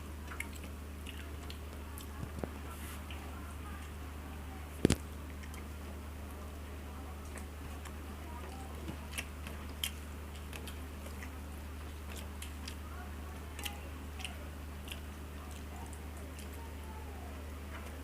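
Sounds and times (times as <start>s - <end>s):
steady low hum: 0.0s - 18.0s
person chewing food: 0.1s - 3.2s, 7.1s - 16.8s
lip-smacking clicks: 0.2s - 3.2s, 7.2s - 12.8s, 13.5s - 16.7s.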